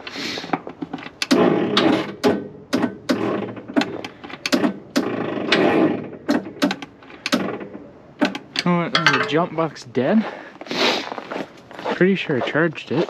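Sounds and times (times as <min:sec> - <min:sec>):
starter motor cranking engine slowly: 0:00.1 - 0:02.5, 0:03.1 - 0:08.6.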